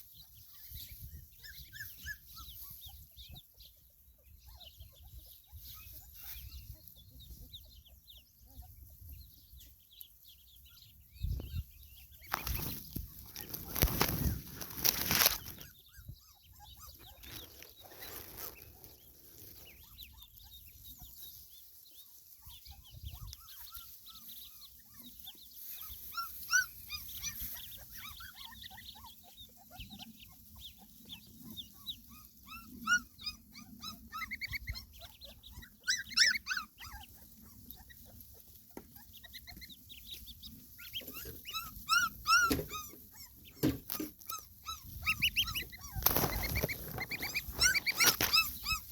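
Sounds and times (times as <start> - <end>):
young animal squeaky calls: 0.0 - 9.6, 10.6 - 48.9.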